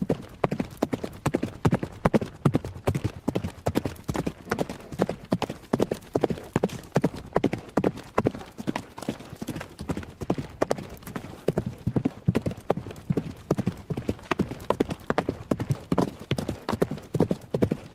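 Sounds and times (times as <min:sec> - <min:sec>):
horse hoofbeats galloping: 0:00.0 - 0:17.9.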